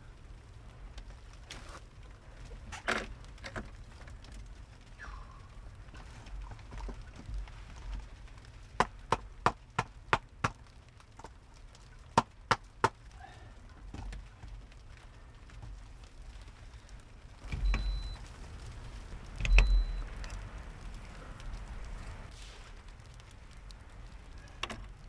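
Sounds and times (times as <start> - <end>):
low steady rumble: 14.6 - 25.0.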